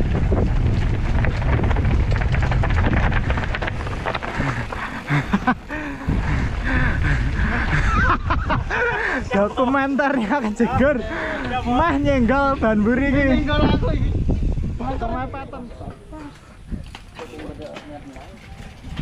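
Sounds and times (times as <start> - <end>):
bike rumbling and rattling: 0.0 - 19.0
wind buffeting microphone: 0.0 - 19.0.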